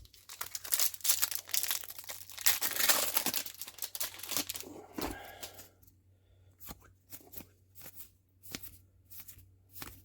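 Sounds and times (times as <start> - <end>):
plastic wrapper crinkling: 0.0 - 4.8.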